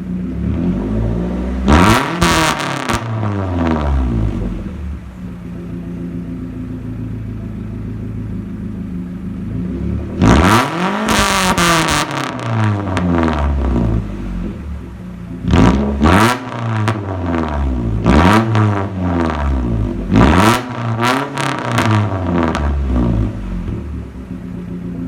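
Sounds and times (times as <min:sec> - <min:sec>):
car engine revving and idling: 0:00.0 - 0:25.0
exhaust crackles and pops: 0:01.7 - 0:05.3, 0:10.2 - 0:25.0.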